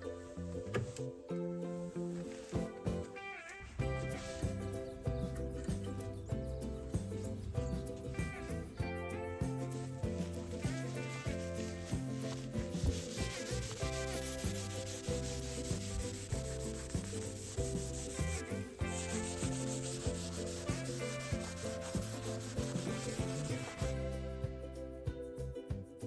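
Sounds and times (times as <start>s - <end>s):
soft background music: 0.0s - 26.0s
scrubbing on a hard surface: 2.2s - 5.9s, 9.4s - 24.3s.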